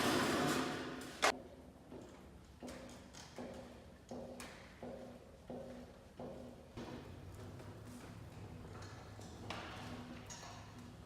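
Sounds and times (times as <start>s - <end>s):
band sawmill running: 0.0s - 1.3s.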